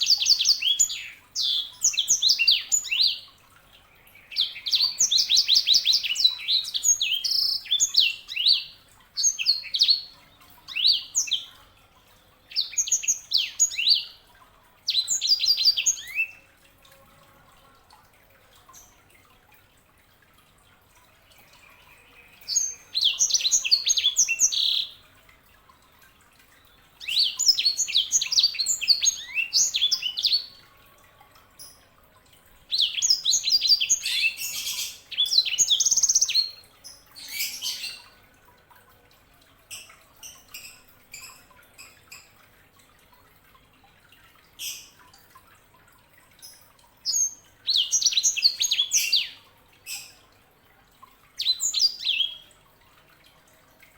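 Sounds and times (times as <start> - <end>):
bird twittering song: 0.0 - 3.3, 3.9 - 11.6, 12.5 - 14.2, 14.9 - 16.5, 21.4 - 25.0, 26.7 - 30.6, 32.7 - 38.2, 46.4 - 50.2, 51.4 - 52.5.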